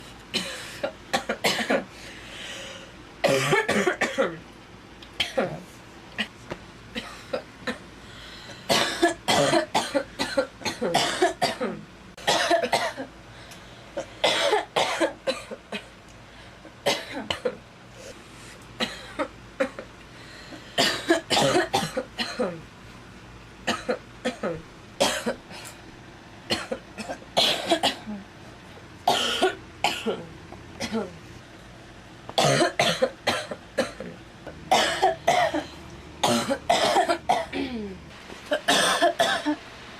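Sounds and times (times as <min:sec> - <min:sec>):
girl coughing: 0:00.4 - 0:01.9, 0:03.2 - 0:04.4, 0:05.2 - 0:05.6, 0:08.7 - 0:13.1, 0:14.0 - 0:15.9, 0:16.8 - 0:17.6, 0:18.8 - 0:19.9, 0:20.8 - 0:22.6, 0:23.7 - 0:25.8, 0:26.5 - 0:28.2, 0:29.1 - 0:31.2, 0:32.4 - 0:39.6.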